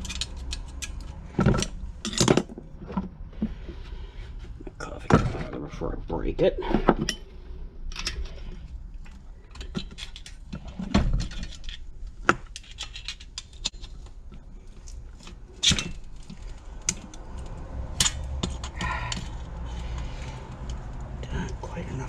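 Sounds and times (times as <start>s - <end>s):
hand tools clicking on metal: 0.0s - 2.3s, 15.2s - 21.1s.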